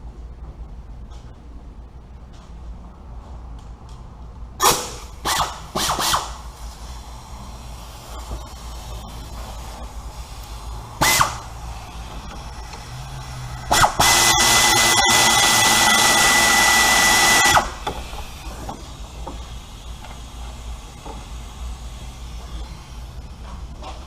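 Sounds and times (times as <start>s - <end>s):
power drill motor whirring: 7.5s - 23.2s.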